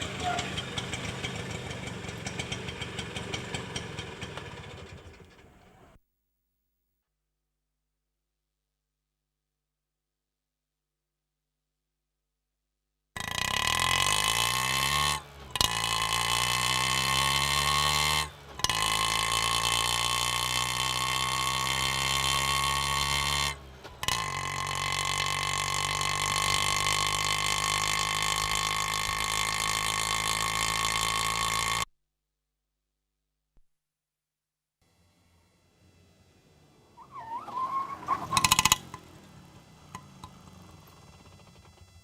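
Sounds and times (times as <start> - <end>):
auto rickshaw engine running: 0.0 - 6.0, 13.2 - 31.9, 34.8 - 42.0.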